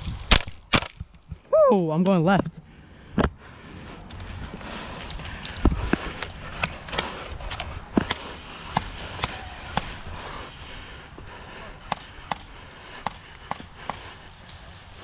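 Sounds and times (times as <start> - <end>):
background rustle: 14.0 - 15.0.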